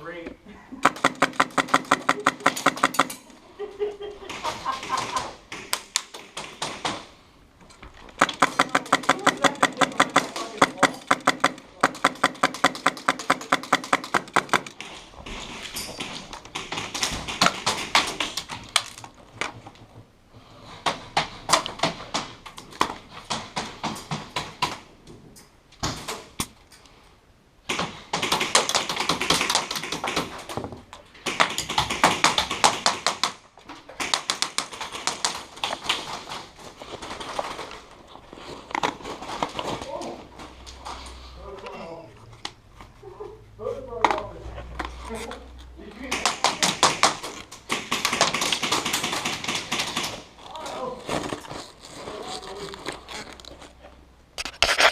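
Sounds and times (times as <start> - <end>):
airsoft guns firing: 0.8 - 3.3, 8.2 - 18.6, 27.7 - 30.5, 34.0 - 36.3, 46.1 - 50.3.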